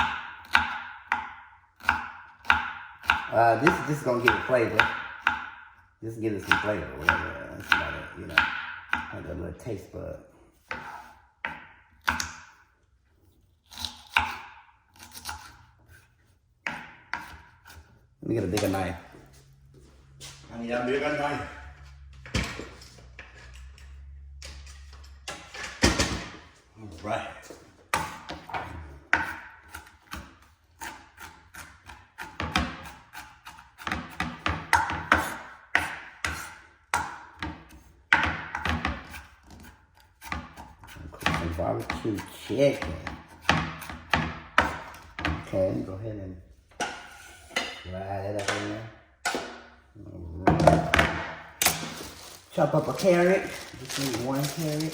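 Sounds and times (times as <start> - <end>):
knife chopping celery on board: 0.0 - 5.5, 6.4 - 9.2, 10.6 - 12.6, 13.7 - 17.9, 27.9 - 45.8.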